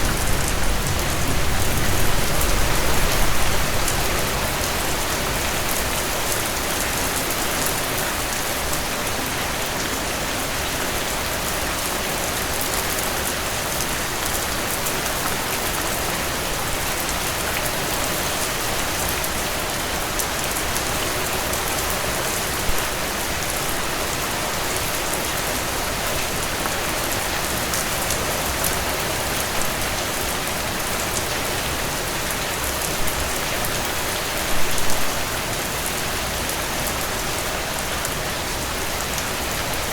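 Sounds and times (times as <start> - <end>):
heavy rain hissing: 0.0 - 7.1.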